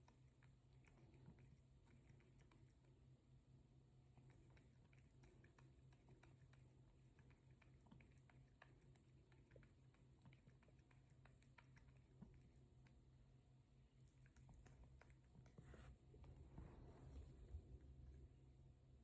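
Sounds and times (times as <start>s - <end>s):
cat lapping water: 0.0s - 3.1s, 4.0s - 16.0s.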